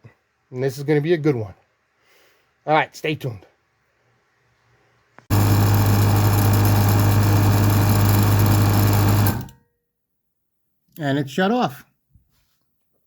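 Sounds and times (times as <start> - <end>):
air compressor humming: 5.3 - 9.5.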